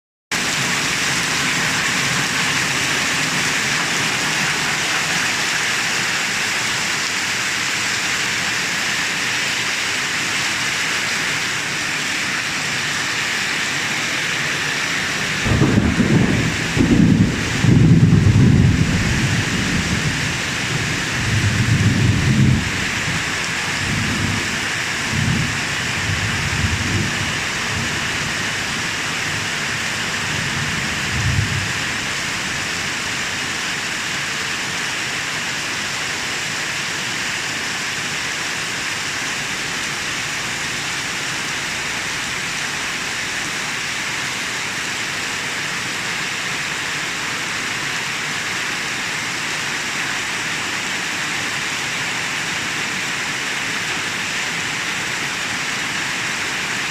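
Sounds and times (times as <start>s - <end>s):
heavy rain pouring: 0.3s - 56.9s
thunder rumbling: 14.9s - 29.1s, 30.3s - 32.8s.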